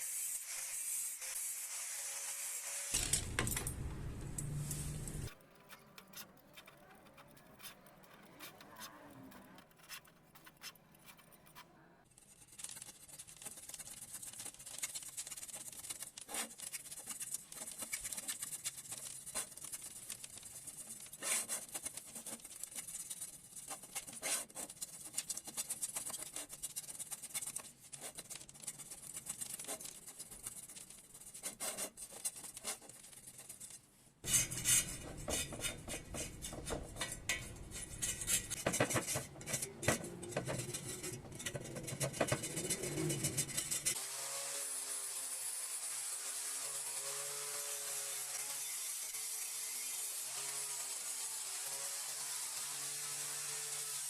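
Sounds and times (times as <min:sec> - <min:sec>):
small scrapes and clicks: 0:02.9 - 0:44.0
hiss of rubbing strokes: 0:04.4 - 0:05.3, 0:34.2 - 0:38.6.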